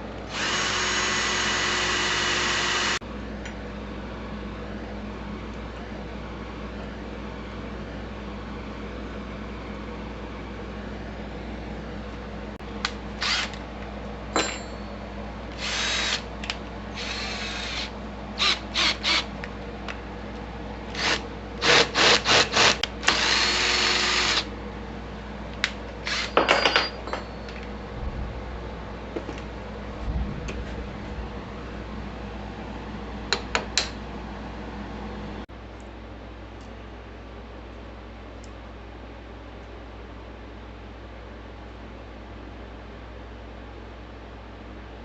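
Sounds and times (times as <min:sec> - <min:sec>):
power drill boring metal: 0:00.3 - 0:03.0, 0:13.2 - 0:13.6, 0:15.6 - 0:16.2, 0:17.0 - 0:19.3, 0:21.0 - 0:24.5, 0:26.0 - 0:26.8
low steady hum: 0:26.8 - 0:45.0.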